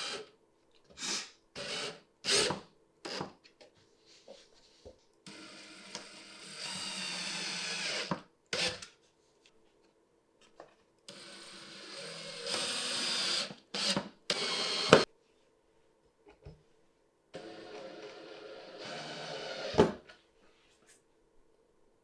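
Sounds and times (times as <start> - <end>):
cordless drill driving screws: 5.3 - 8.9, 11.1 - 15.1, 17.4 - 20.0.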